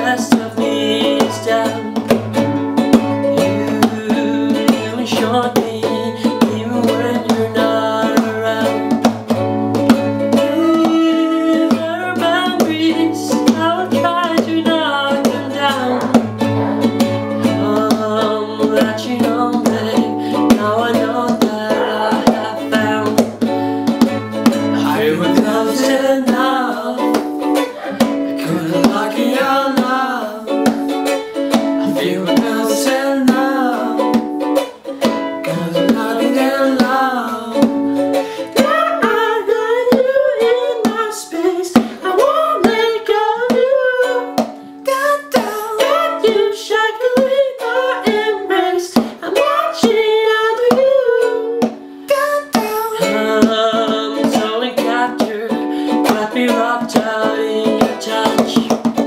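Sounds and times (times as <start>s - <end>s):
hand percussion on a chair: 0.0s - 30.0s, 56.0s - 59.0s
acoustic guitar chords: 0.0s - 59.0s
person singing: 0.0s - 59.0s
ukulele chords: 0.0s - 59.0s.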